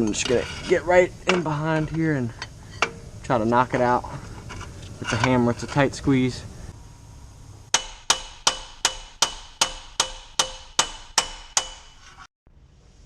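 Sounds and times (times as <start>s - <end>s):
hammer striking steel: 7.7s - 12.3s.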